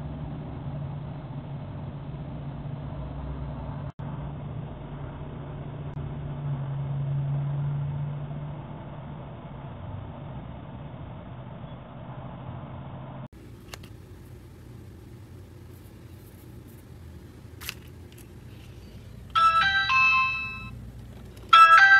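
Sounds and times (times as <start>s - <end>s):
low hum and hiss: 13.4s - 21.6s
electronic doorbell chime: 19.4s - 20.8s, 21.5s - 21.9s.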